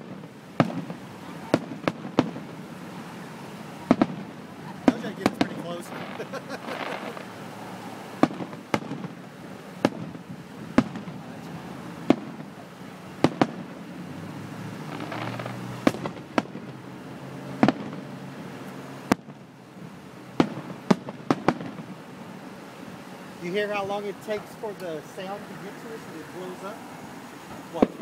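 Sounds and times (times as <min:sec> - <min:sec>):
distant fireworks bangs: 0:00.0 - 0:28.0.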